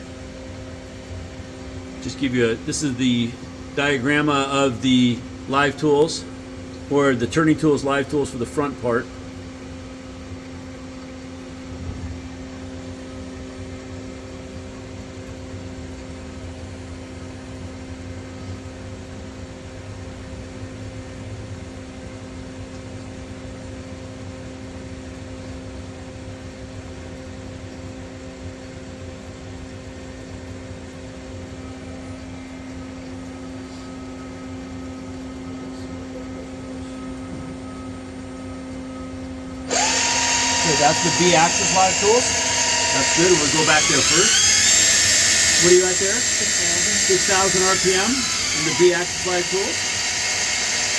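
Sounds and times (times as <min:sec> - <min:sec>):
faint high whine: 0:35.4 - 0:50.9
lathe humming: 0:39.7 - 0:50.9.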